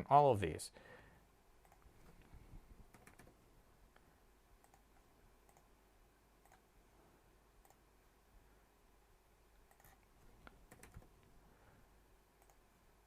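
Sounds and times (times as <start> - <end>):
computer mouse and keyboard clicks: 1.6 - 2.2, 2.8 - 3.4, 4.6 - 5.7, 6.4 - 6.7, 9.6 - 11.2, 12.4 - 12.6.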